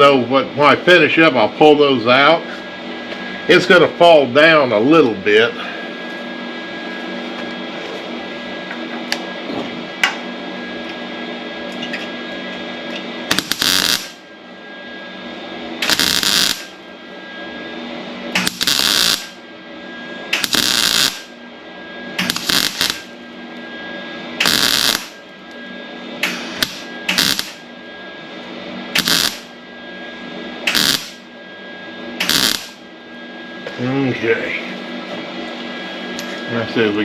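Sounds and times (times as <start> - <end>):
welding crackling bursts: 13.3 - 14.2, 15.8 - 16.8, 18.4 - 19.4, 20.4 - 21.3, 22.2 - 23.1, 24.4 - 25.2, 26.6 - 27.6, 29.0 - 29.5, 30.7 - 31.2, 32.2 - 32.8.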